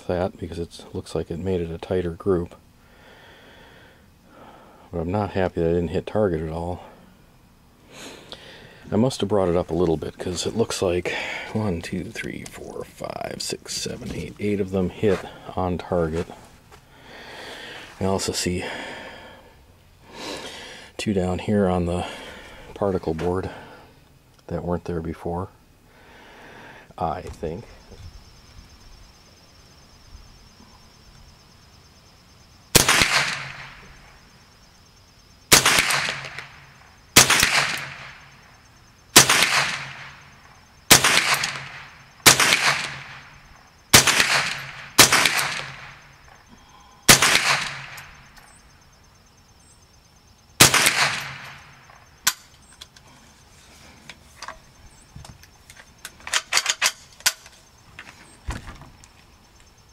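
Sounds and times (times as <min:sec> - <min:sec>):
rifle shots with echo: 0:32.7 - 0:33.9, 0:35.5 - 0:38.4, 0:39.1 - 0:46.4, 0:47.0 - 0:48.2, 0:50.6 - 0:52.0.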